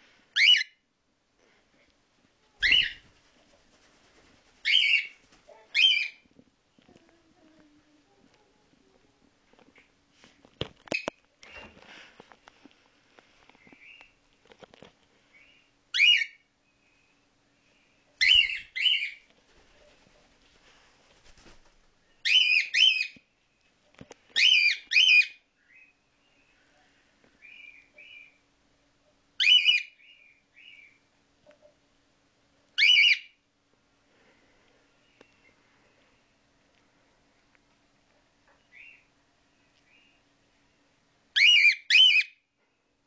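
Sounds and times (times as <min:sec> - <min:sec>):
cockatiel chirping: 0:00.4 - 0:00.8, 0:02.6 - 0:03.0, 0:04.6 - 0:06.2, 0:15.4 - 0:16.4, 0:18.2 - 0:19.2, 0:22.2 - 0:23.2, 0:24.4 - 0:25.9, 0:29.4 - 0:31.0, 0:32.8 - 0:33.4, 0:41.4 - 0:42.4
cockatiel shrill calls: 0:00.4 - 0:00.8, 0:02.6 - 0:03.0, 0:04.6 - 0:05.1, 0:05.7 - 0:06.2, 0:15.9 - 0:16.4, 0:18.2 - 0:19.2, 0:22.2 - 0:23.2, 0:24.4 - 0:25.4, 0:29.4 - 0:30.0, 0:32.8 - 0:33.3, 0:41.4 - 0:42.4.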